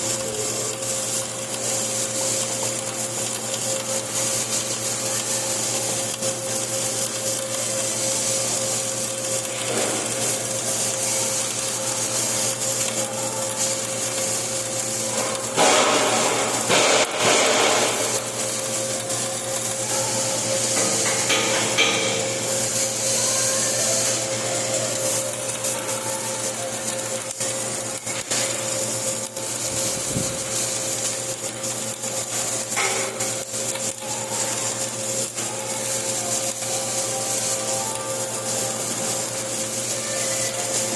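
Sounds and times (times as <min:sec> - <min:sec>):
welding arc crackling: 0:00.0 - 0:40.9
welding machine electrical hum: 0:00.0 - 0:40.9.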